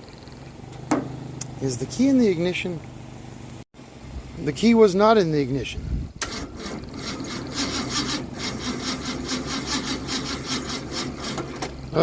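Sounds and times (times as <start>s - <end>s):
car engine cranking on starter: 6.2s - 12.0s.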